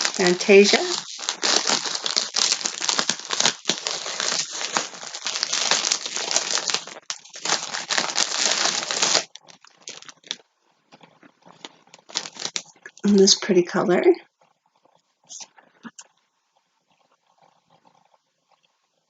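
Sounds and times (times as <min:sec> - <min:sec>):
plastic packaging crinkling: 0:00.0 - 0:13.5.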